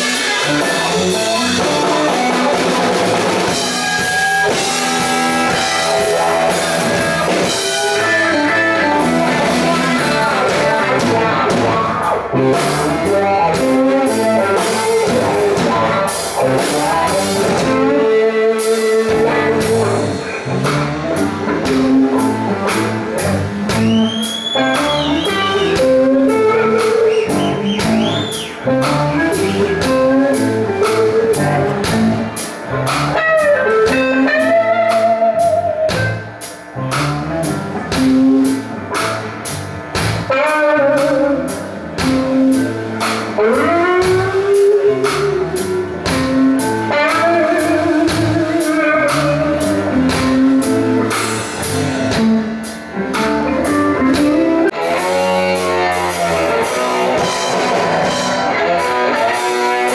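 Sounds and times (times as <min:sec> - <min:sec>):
drum kit steady beat: 0:00.0 - 0:59.9
electric guitar with bending notes: 0:00.0 - 0:59.9.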